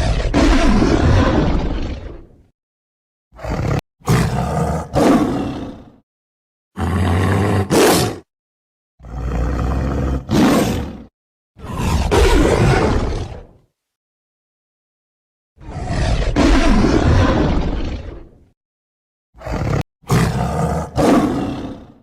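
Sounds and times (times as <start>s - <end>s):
tiger roaring: 0.0s - 2.3s, 3.3s - 6.0s, 6.8s - 8.3s, 9.0s - 13.6s, 15.6s - 18.3s, 19.4s - 22.0s.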